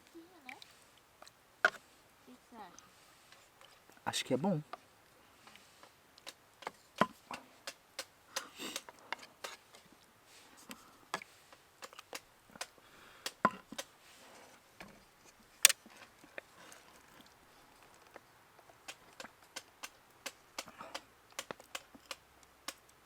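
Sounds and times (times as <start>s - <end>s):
sharp knocks and clicks of handling: 11.1s - 13.9s.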